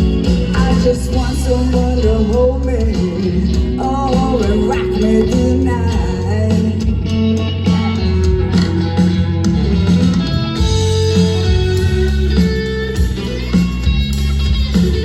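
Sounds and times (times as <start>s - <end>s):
person singing: 0.0s - 8.3s
rock guitar: 0.0s - 15.0s
steady bass line: 0.0s - 15.0s.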